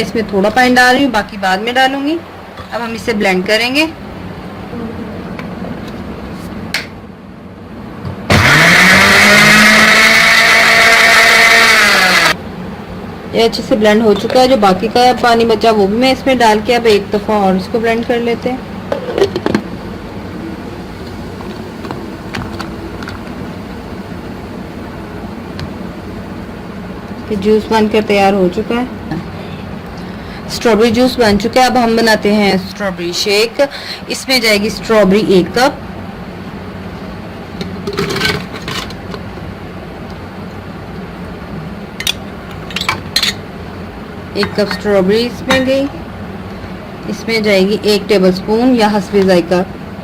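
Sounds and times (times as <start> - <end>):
steady low hum: 0.0 - 50.0
blender knocking: 8.1 - 12.4
electric blender running: 8.3 - 12.4.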